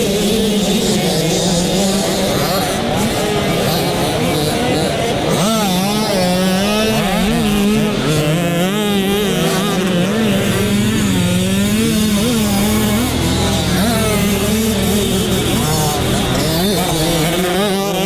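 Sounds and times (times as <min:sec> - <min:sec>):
dirt bike engine revving: 0:00.0 - 0:18.0.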